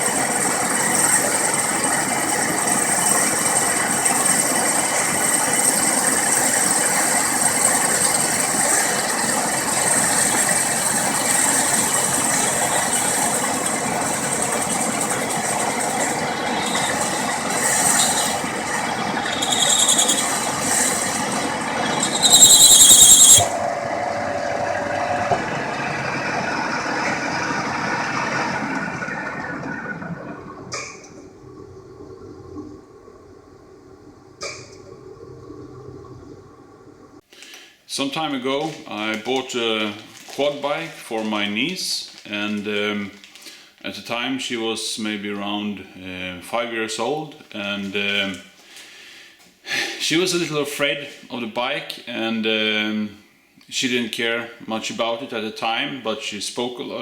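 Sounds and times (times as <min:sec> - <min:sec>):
machine squealing: 0:00.0 - 0:30.1
machinery running with whine: 0:00.0 - 0:34.4.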